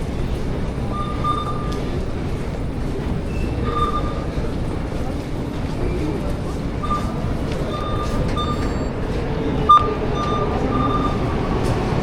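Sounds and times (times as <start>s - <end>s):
train rumbling in motion: 0.0s - 12.0s
short high electronic beeps: 7.8s - 9.0s.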